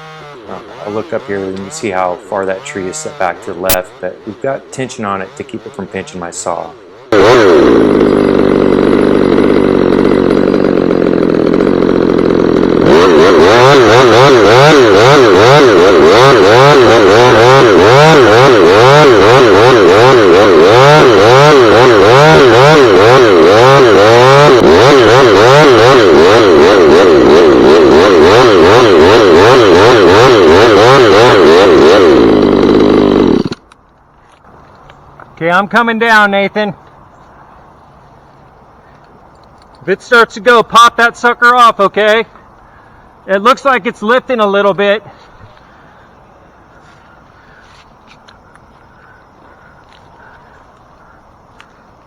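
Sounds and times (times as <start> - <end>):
chainsaw cutting wood: 0.0 - 34.8.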